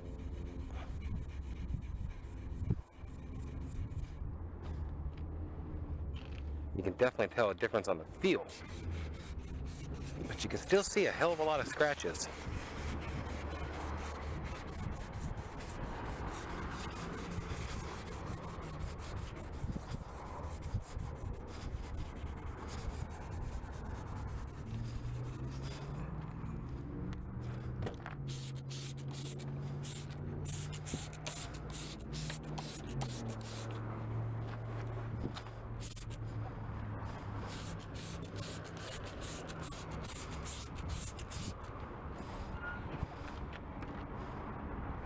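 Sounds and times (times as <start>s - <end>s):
sandpaper scratching plastic: 0.0s - 4.3s, 8.2s - 26.0s, 27.4s - 33.8s, 35.3s - 36.4s, 37.1s - 42.4s.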